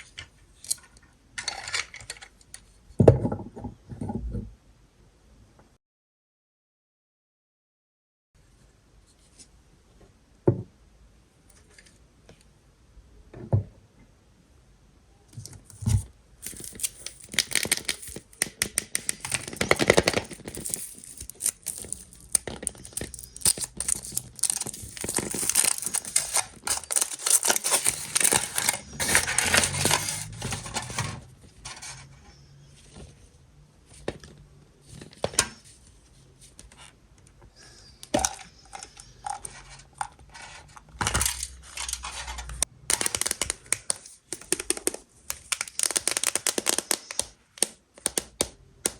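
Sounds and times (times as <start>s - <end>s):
foil wrapper crinkling and tearing: 16.4s - 31.1s, 42.9s - 48.5s.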